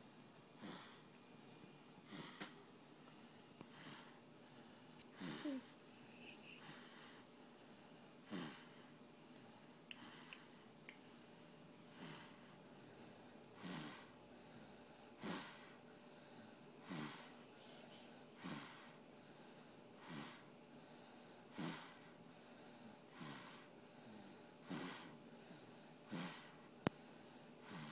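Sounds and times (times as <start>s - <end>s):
soft breathing: 0.6s - 27.9s
person snoring: 5.2s - 7.0s, 8.3s - 8.8s, 11.9s - 12.4s, 13.6s - 14.1s, 16.8s - 17.3s, 18.4s - 19.0s, 20.0s - 20.4s, 21.5s - 22.0s, 22.8s - 25.2s, 26.1s - 26.6s, 27.6s - 27.9s.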